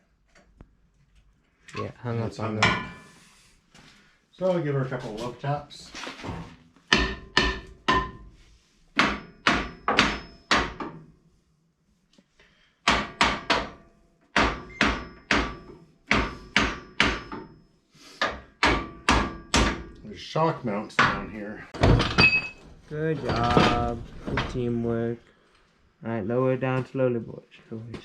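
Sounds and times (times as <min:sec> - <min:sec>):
hammer striking metal axle: 0:06.9 - 0:08.4, 0:09.0 - 0:11.1, 0:12.9 - 0:17.6, 0:18.2 - 0:20.0.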